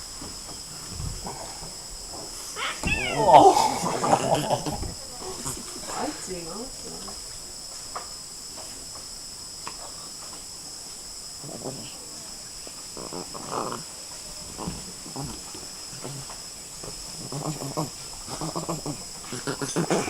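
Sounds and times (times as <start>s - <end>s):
insects chirring: 0.0s - 20.0s
short animal cries: 2.6s - 3.8s.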